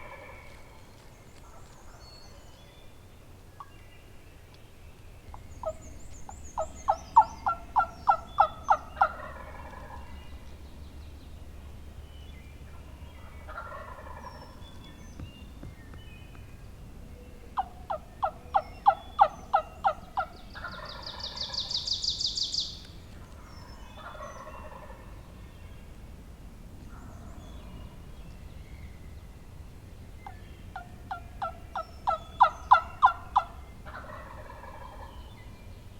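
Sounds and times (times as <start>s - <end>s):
turkey gobbling: 0.0s - 0.8s, 5.6s - 10.4s, 12.7s - 14.6s, 17.6s - 22.8s, 23.9s - 25.1s, 30.2s - 35.3s
turkey yelps: 6.6s - 10.1s, 30.8s - 35.1s.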